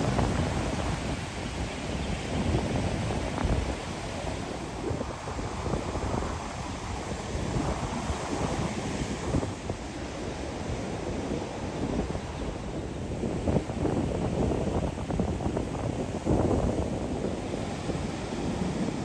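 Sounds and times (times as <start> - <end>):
wind buffeting microphone: 0.0 - 19.0
ocean surf on beach: 15.9 - 19.0.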